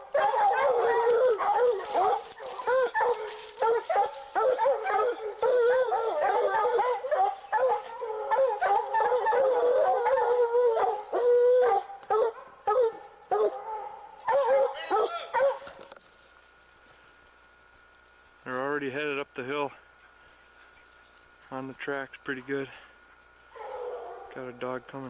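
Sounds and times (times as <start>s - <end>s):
hounds baying: 0.0s - 15.8s, 22.4s - 24.5s.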